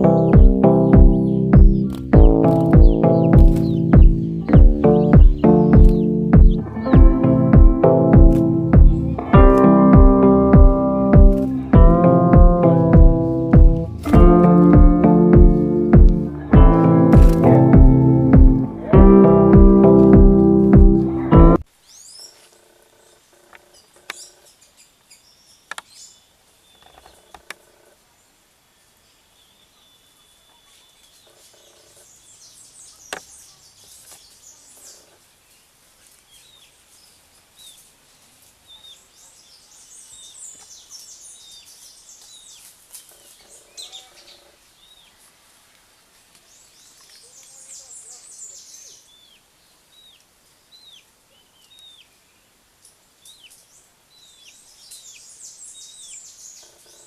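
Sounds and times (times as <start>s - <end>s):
small birds chirping: 0.0s - 45.4s, 46.0s - 57.0s
sharp clicks: 1.9s - 3.7s.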